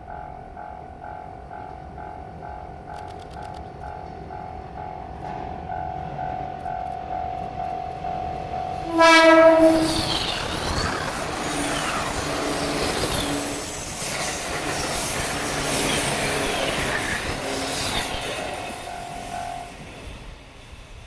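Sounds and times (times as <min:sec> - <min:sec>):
train horn: 0:08.7 - 0:10.4, 0:16.3 - 0:19.8.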